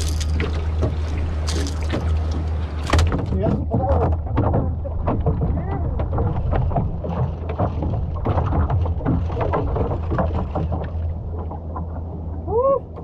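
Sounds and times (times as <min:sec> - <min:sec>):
boat motor humming: 0:00.0 - 0:13.0
knocks on boat hull: 0:02.8 - 0:11.1.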